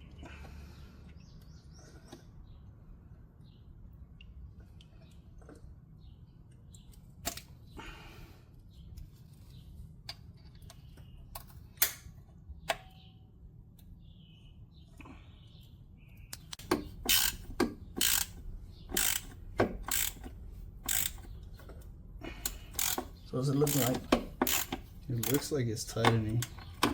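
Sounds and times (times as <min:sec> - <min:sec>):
hand tools clicking and tapping: 0:16.3 - 0:26.9
ratchet wrench clicking: 0:16.4 - 0:21.6, 0:22.4 - 0:26.9.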